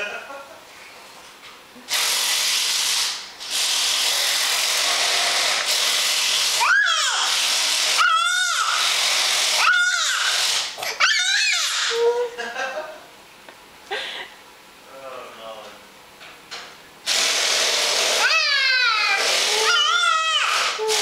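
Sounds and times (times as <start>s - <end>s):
power screwdriver whirring: 1.9s - 10.7s, 17.1s - 21.0s
baby yelling: 6.6s - 7.4s, 8.0s - 8.9s, 9.6s - 12.3s, 18.2s - 21.0s.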